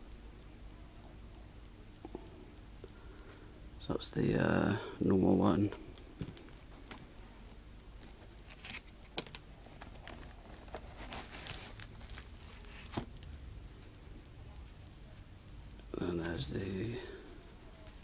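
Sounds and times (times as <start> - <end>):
light clicks and taps: 5.7 - 18.0
plastic packaging rustling: 8.0 - 13.2.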